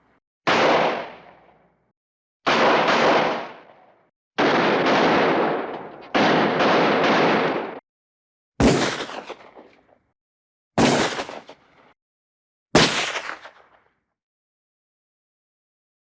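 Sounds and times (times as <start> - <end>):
burst of gunfire: 0.5 - 1.8, 2.5 - 7.8, 8.6 - 9.9, 10.8 - 12.0, 12.8 - 13.8
single gunshots with echo: 0.5 - 1.8, 2.5 - 7.8, 8.6 - 9.9, 10.8 - 11.7, 12.8 - 13.8.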